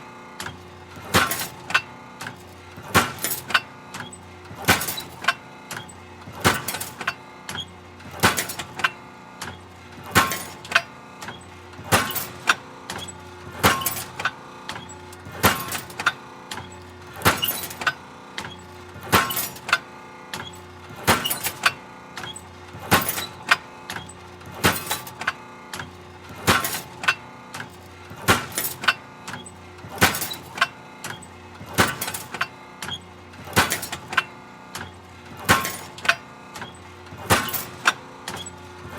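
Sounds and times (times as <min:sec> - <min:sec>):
mechanical hum: 0:00.0 - 0:38.9
metal shear bang and rattle: 0:04.6 - 0:05.3, 0:17.2 - 0:17.9, 0:21.0 - 0:23.5, 0:24.6 - 0:25.3, 0:26.4 - 0:27.2, 0:28.2 - 0:32.5, 0:33.5 - 0:38.5.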